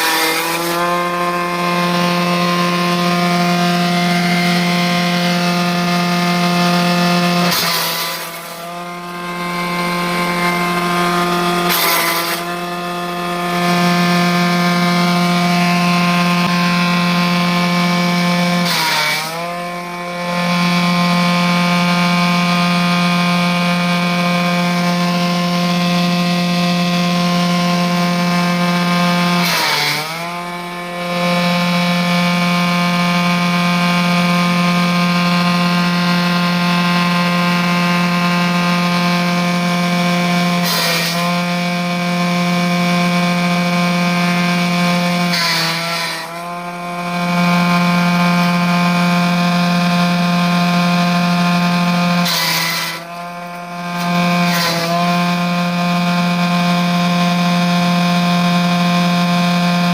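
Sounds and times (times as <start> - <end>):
forage chopper whining: 0.0 - 50.1
chopping noise: 7.4 - 8.6, 10.2 - 12.6.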